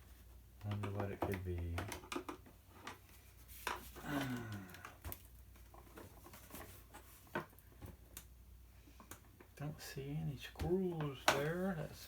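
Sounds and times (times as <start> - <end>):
plastic parts clicking and knocking: 0.6 - 8.4, 10.6 - 11.6.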